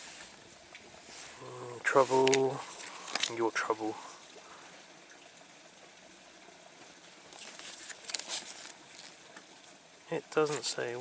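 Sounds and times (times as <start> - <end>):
water trickling and splashing: 0.0 - 11.0
sharp splashes or clicks: 2.1 - 3.4.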